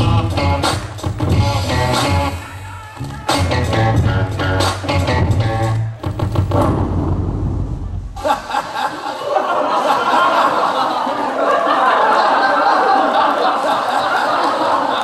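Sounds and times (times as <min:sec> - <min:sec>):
crowd cheering and shouting: 0:00.0 - 0:06.8
dance music: 0:00.0 - 0:07.0.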